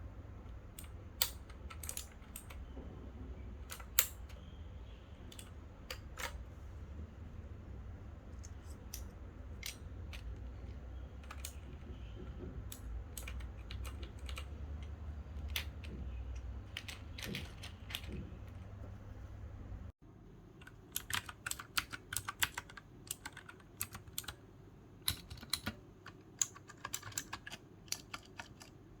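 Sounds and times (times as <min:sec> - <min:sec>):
mechanical keyboard key clicks: 0:00.7 - 0:02.6, 0:03.7 - 0:04.3, 0:12.7 - 0:14.5, 0:20.6 - 0:24.4, 0:25.0 - 0:25.8.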